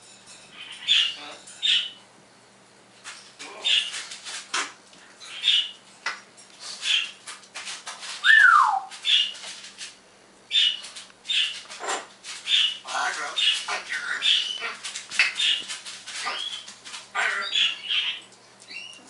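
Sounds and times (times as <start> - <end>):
parrot chirping calls: 0.5 - 2.0, 5.2 - 5.8, 8.2 - 9.4, 10.5 - 19.0.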